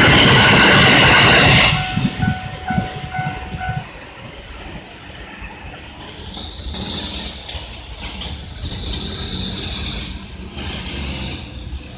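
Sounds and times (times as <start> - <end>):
vehicle engines rumbling: 0.0 - 11.9
hiss: 5.9 - 11.8.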